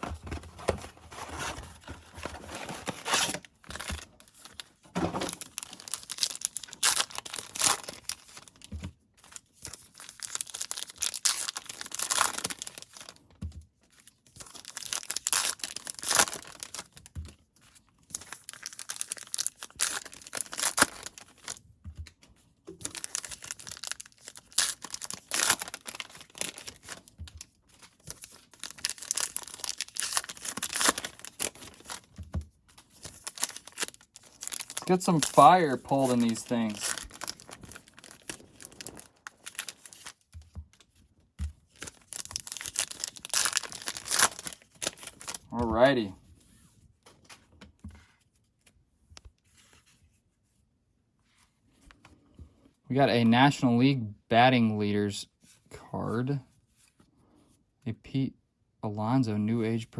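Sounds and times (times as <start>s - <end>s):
card pack wrappers tearing and rustling: 0.0s - 13.2s, 13.9s - 17.1s, 17.7s - 21.6s, 22.7s - 40.3s, 41.6s - 46.1s.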